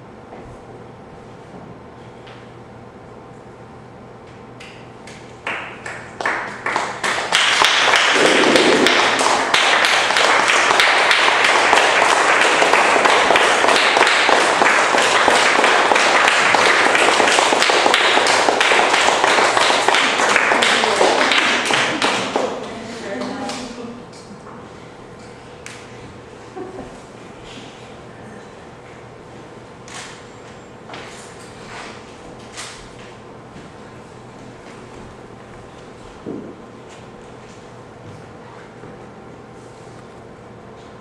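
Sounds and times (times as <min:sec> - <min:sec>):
audience applause: 0:05.4 - 0:23.7.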